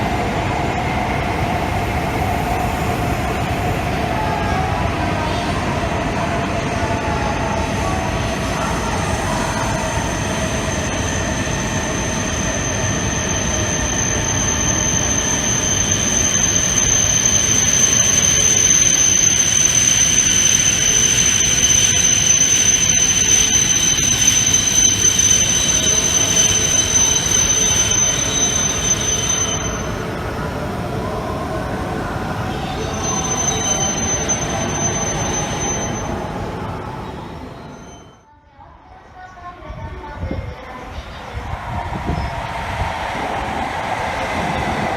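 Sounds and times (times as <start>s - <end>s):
train running noise: 0.0s - 44.9s
high-pitched squeal: 9.1s - 30.0s, 32.5s - 38.2s.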